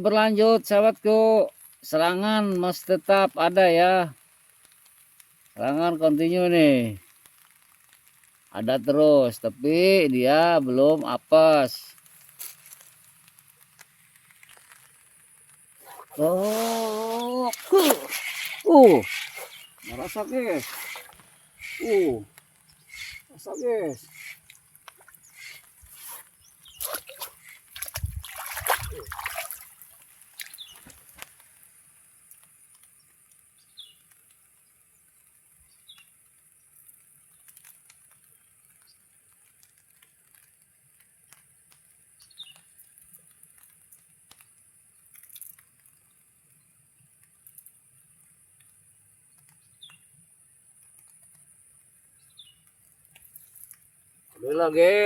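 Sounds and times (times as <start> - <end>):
light drizzle: 0.0 - 55.0
faint drips and ticks: 0.1 - 55.0
bird chirping: 15.8 - 28.0.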